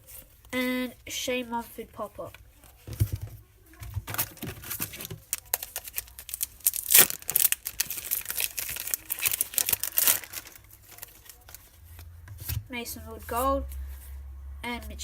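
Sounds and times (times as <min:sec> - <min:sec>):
wrapper crinkling: 0:04.0 - 0:12.1
foil card pack tearing: 0:04.1 - 0:11.6.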